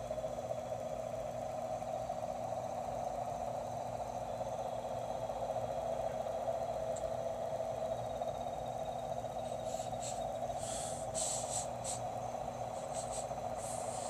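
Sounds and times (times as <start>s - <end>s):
steady droning hum: 0.0s - 14.0s
short hissing sounds: 9.4s - 12.1s, 12.7s - 14.0s.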